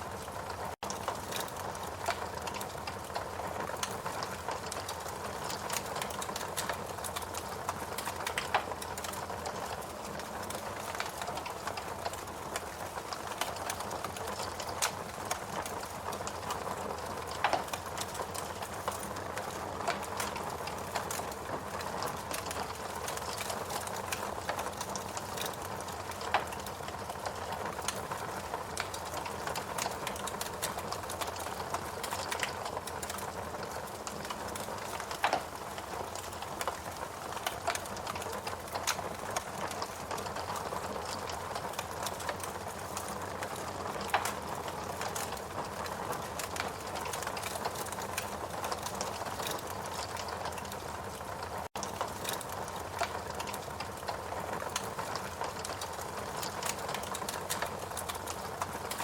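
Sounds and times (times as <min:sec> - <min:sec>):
fire crackling and popping: 0:00.0 - 0:59.0
fire hissing and rustling: 0:00.0 - 0:59.0.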